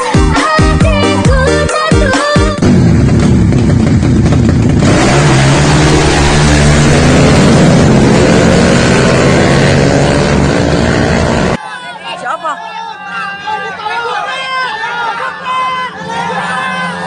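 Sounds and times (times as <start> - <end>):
motorcycle engines at high revs: 2.6 - 11.6.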